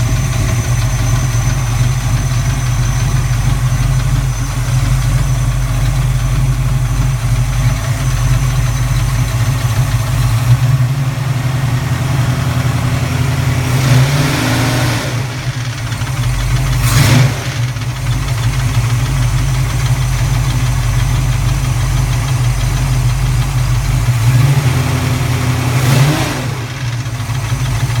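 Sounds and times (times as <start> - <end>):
engine revving: 0.0 - 19.0, 24.0 - 28.0
engine idling with metallic clatter: 0.0 - 28.0.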